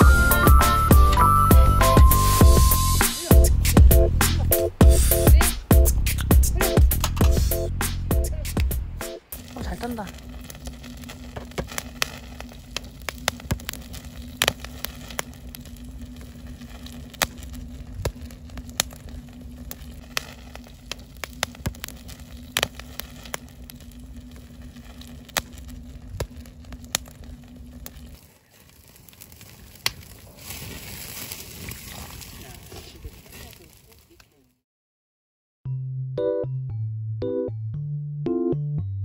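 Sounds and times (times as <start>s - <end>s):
low rumble: 0.0s - 28.2s
campfire crackling and popping: 0.0s - 34.6s.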